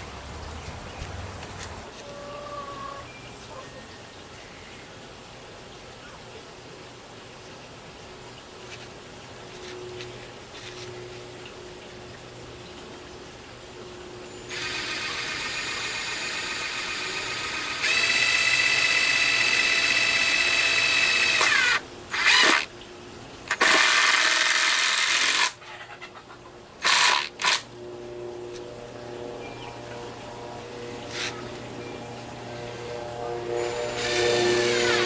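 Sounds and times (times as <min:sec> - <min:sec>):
power drill whine: 0:14.5 - 0:22.7, 0:23.6 - 0:25.5, 0:26.8 - 0:27.6, 0:33.6 - 0:35.0.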